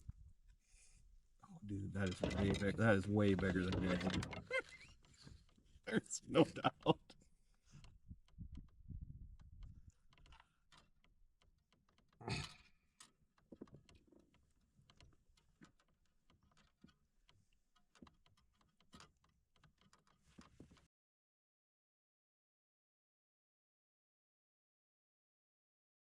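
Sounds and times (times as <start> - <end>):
faint clicks and light knocks: 6.6 - 20.9.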